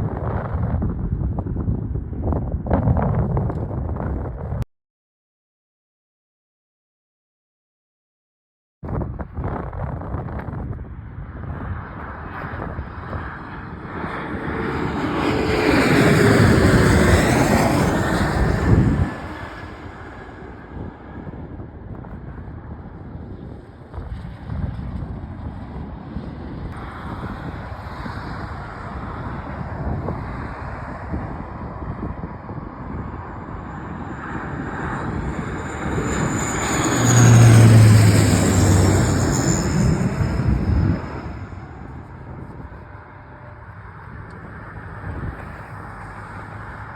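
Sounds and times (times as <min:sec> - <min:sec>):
wind buffeting microphone: 0:00.0 - 0:04.6, 0:08.8 - 0:46.0
jet airliner passing: 0:10.7 - 0:46.9.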